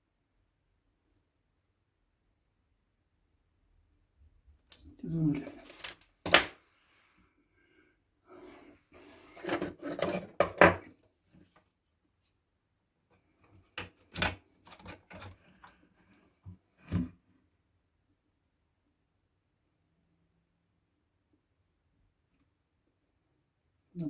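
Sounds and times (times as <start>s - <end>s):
scraping of hard parts: 9.2s - 10.9s.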